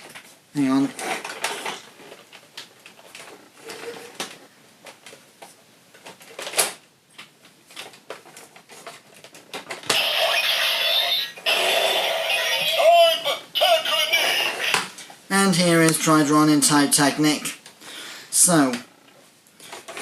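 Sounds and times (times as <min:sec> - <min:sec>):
electronic toy sound effect: 0:09.9 - 0:14.9.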